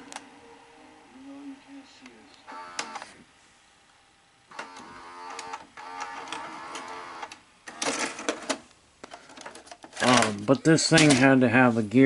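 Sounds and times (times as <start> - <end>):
small motor whirring: 2.5 - 3.0, 4.5 - 7.3
tape mechanism clicks and clunks: 2.5 - 3.1, 4.5 - 11.4.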